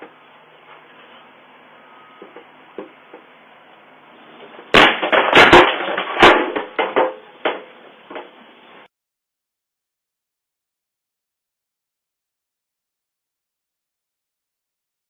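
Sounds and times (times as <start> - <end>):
loud bangs and clattering: 4.7 - 7.7.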